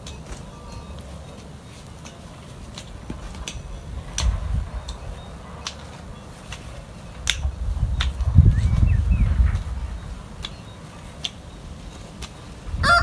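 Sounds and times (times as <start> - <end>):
low rumble: 7.1 - 10.4.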